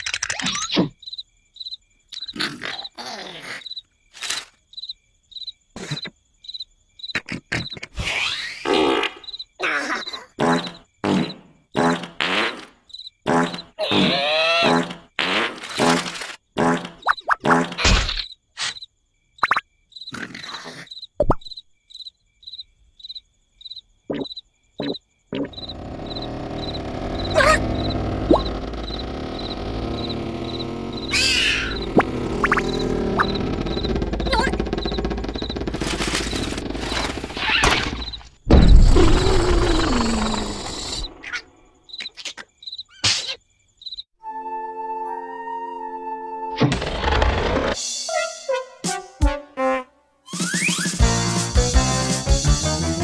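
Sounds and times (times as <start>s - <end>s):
cricket chirping: 0.0s - 12.0s, 12.7s - 15.1s, 15.8s - 44.2s
comic sound effects: 24.8s - 34.7s
loud noisy sound: 25.5s - 37.4s.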